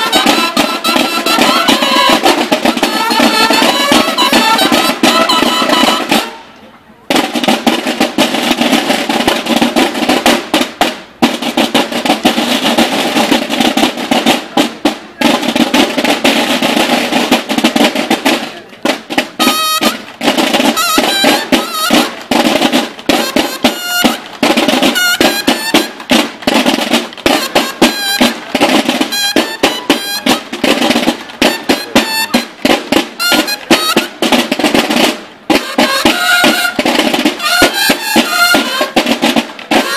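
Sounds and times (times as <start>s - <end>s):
loud percussive music: 0.0s - 6.5s, 7.1s - 39.9s.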